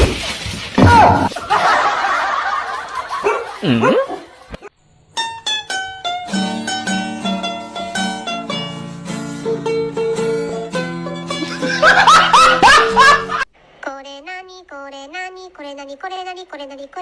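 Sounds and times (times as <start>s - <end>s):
plucked string music: 5.2s - 13.4s.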